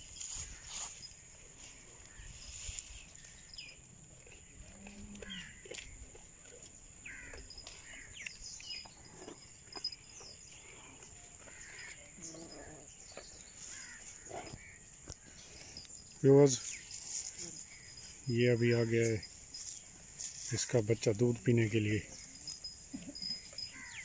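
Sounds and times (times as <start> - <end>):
low animal call: 4.5 - 5.9, 7.1 - 15.7.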